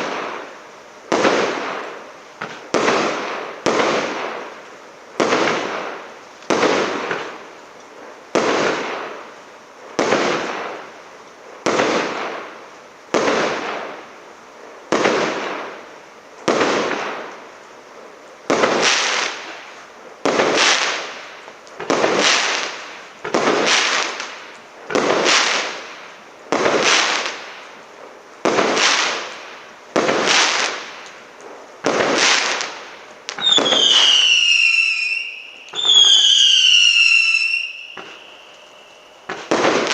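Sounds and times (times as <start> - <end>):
firework bangs: 0.0 - 4.5, 5.2 - 7.5, 8.3 - 9.3, 9.9 - 11.0, 11.6 - 14.1, 14.9 - 17.3, 18.4 - 39.9
falling whistling tones: 33.4 - 39.4.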